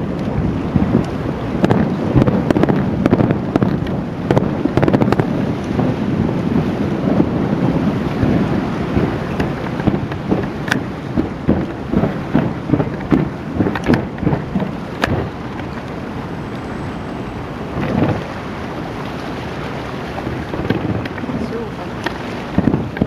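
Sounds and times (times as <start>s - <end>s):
fireworks booming and cracking: 8.9s - 15.4s.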